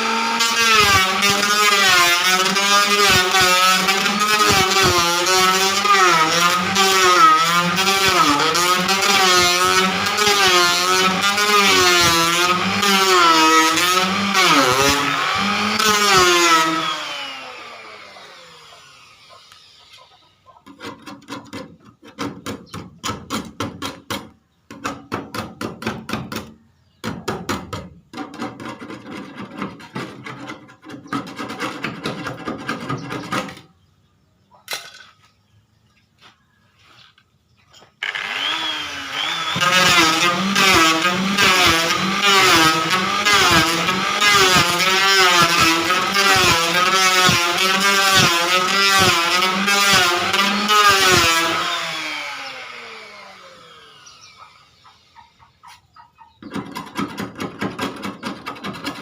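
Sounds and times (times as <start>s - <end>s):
electric planer cutting wood: 0.0s - 20.4s, 38.0s - 55.2s.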